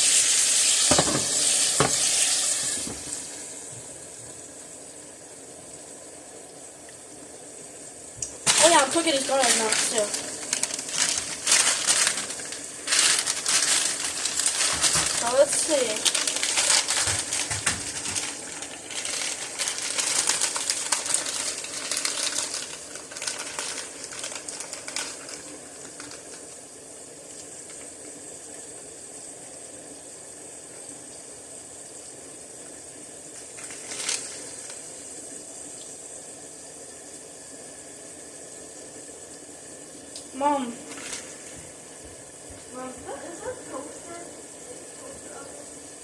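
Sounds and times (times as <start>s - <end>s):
steaks sizzling in a pan: 0.0s - 3.7s, 8.0s - 26.3s.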